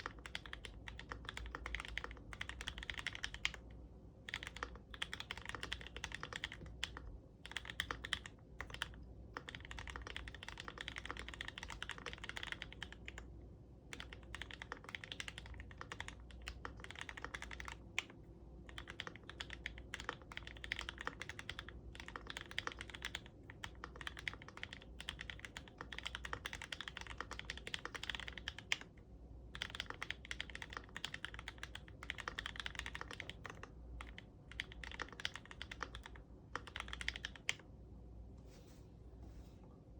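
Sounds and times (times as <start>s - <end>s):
mechanical keyboard typing: 0.0s - 13.3s, 13.9s - 28.9s, 29.5s - 37.6s.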